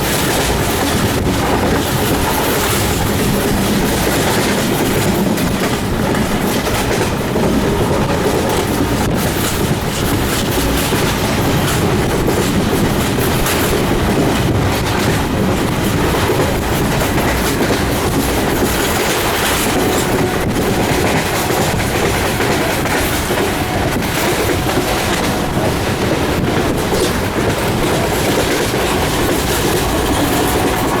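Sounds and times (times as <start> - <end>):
clickety-clack of rail joints: 0.0 - 31.0
train wheels rumbling on track: 0.0 - 31.0
wind: 0.0 - 31.0.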